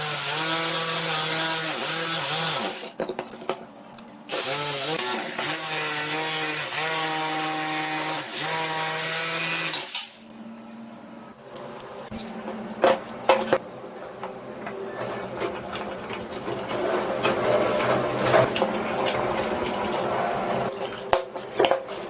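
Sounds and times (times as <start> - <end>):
small power tool running: 0.0 - 2.9, 4.3 - 10.2.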